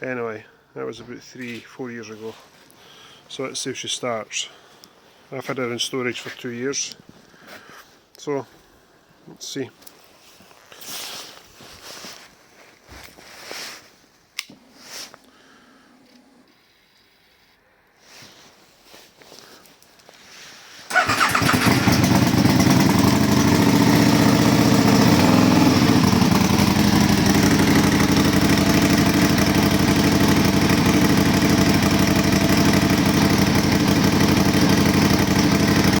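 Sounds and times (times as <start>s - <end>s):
motorcycle engine running: 20.9s - 36.0s.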